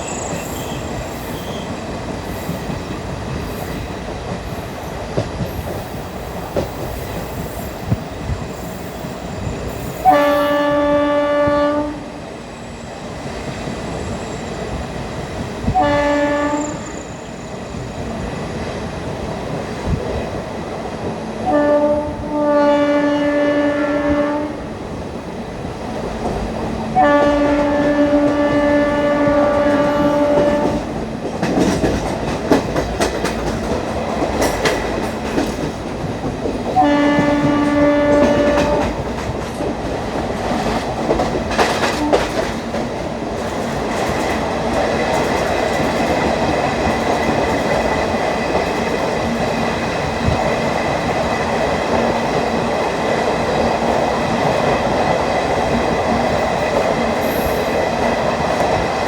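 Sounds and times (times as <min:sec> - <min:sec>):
locomotive horn: 0:10.0 - 0:12.2, 0:15.7 - 0:17.0, 0:21.4 - 0:24.7, 0:26.9 - 0:30.9, 0:36.8 - 0:39.0, 0:42.0 - 0:42.4
wheels clacking over rail joints: 0:26.0 - 0:59.0.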